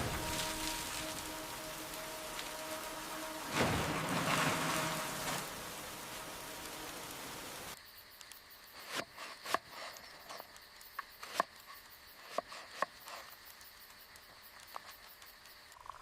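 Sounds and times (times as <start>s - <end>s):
rain hiss: 0.0s - 8.8s.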